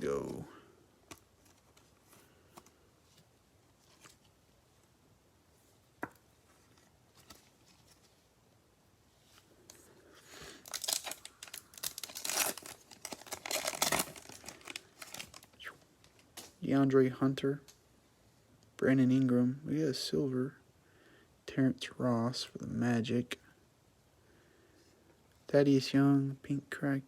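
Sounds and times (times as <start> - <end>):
card pack wrapper tearing and crinkling: 10.5 - 16.5.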